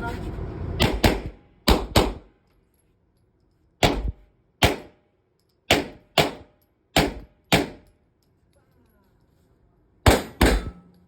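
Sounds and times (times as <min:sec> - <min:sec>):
pistol shots: 0:00.8 - 0:02.3, 0:03.8 - 0:05.0, 0:05.7 - 0:07.8, 0:10.0 - 0:10.8.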